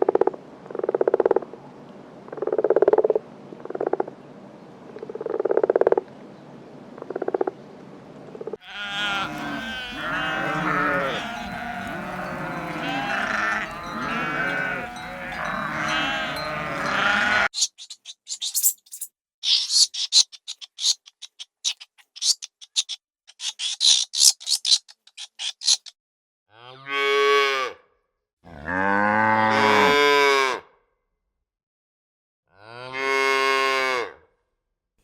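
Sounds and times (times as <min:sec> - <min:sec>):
chorus of farm animals calling: 0:08.6 - 0:17.7, 0:26.6 - 0:27.7, 0:28.6 - 0:30.6
farm animal calling: 0:08.6 - 0:24.2.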